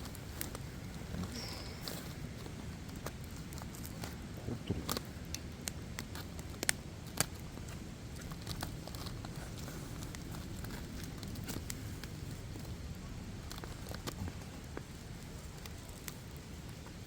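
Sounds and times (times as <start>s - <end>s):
campfire crackling: 0.0s - 17.0s
low rush of burning fire: 0.0s - 17.0s
sharp pops from fire: 4.7s - 12.6s.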